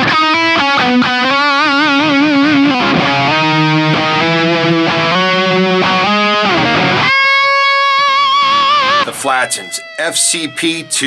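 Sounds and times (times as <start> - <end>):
electric guitar notes: 0.0 - 7.8.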